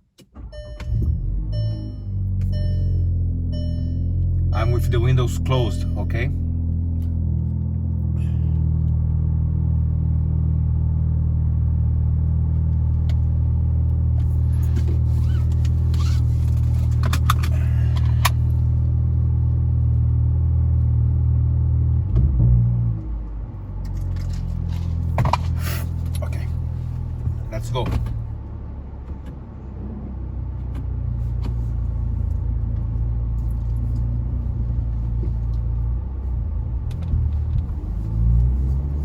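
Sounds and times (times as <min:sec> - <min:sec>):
car engine idling: 0:00.3 - 0:21.6, 0:23.2 - 0:29.7.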